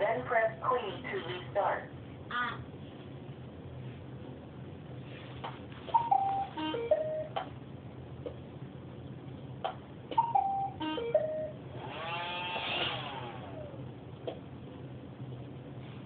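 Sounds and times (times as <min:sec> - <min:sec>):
robot vacuum error beeps: 0:05.9 - 0:07.3.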